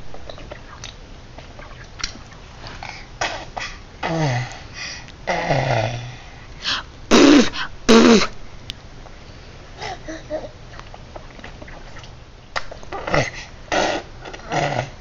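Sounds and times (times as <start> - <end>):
child breathing noises: 2.7 - 7.8, 9.8 - 10.5.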